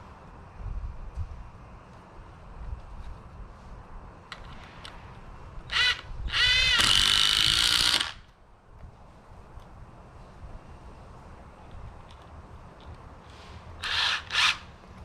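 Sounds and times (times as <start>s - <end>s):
cordless drill driving screw: 5.7s - 8.2s, 13.8s - 14.7s.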